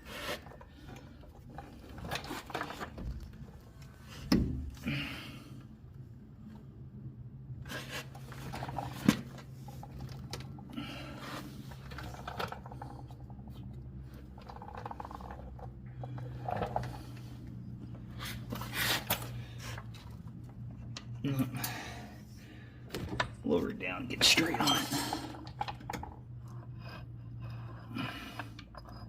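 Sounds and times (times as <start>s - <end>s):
steady low hum: 0.1s - 29.0s
tools and metal parts clunking: 22.9s - 26.9s, 27.6s - 29.0s.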